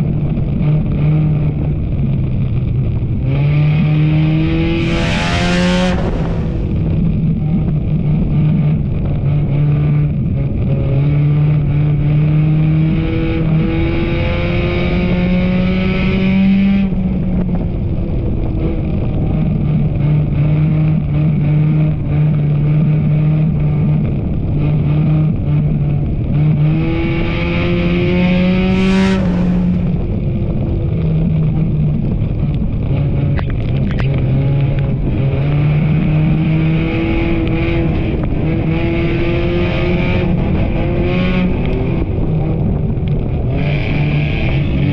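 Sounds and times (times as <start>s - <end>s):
race car engine running hard: 0.0s - 44.9s
rushing burst of noise: 4.5s - 7.8s.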